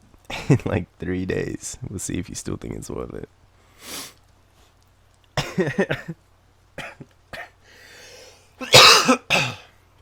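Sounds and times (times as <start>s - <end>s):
man drawing a breath: 3.6s - 4.2s, 7.6s - 8.5s
man coughing harshly: 5.4s - 6.2s, 6.8s - 7.6s, 8.6s - 9.8s
man laughing: 5.4s - 6.2s.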